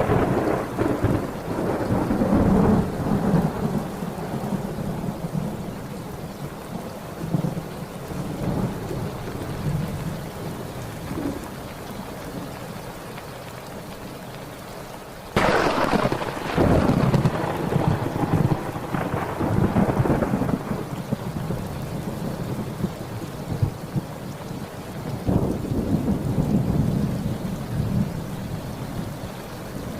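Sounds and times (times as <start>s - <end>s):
loud thunderclap: 0.0s - 5.4s, 15.4s - 21.5s
low thunder rumbling: 0.0s - 12.5s, 15.4s - 29.9s
heavy rain: 0.0s - 29.9s.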